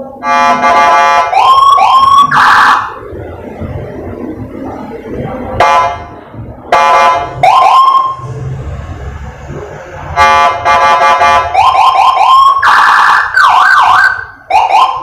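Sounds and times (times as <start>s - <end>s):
steady siren tone: 0.0s - 3.3s, 6.8s - 8.4s, 10.2s - 15.0s
harsh horn blast: 0.2s - 1.4s, 5.6s - 6.1s, 6.7s - 7.4s, 10.2s - 11.6s
rising siren whoops: 1.3s - 3.0s, 7.4s - 8.4s, 11.5s - 15.0s.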